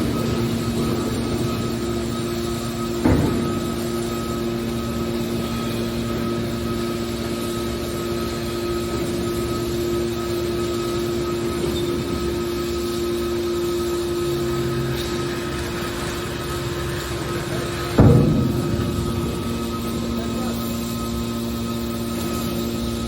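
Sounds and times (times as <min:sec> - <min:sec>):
motor and hydraulic pump hum: 0:00.0 - 0:23.0
sharp metal knock: 0:18.0 - 0:21.1.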